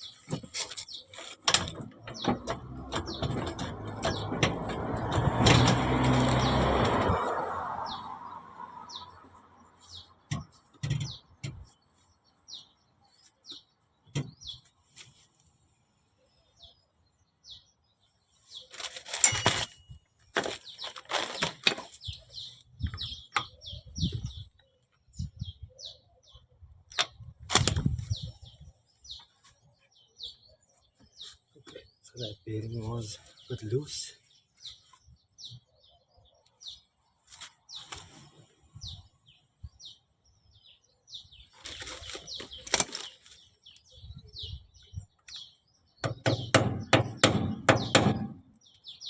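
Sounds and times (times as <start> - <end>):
small birds chirping: 0.0 - 49.0
parts knocking and clattering: 0.3 - 7.2, 10.3 - 11.7, 18.8 - 22.1, 46.0 - 48.5.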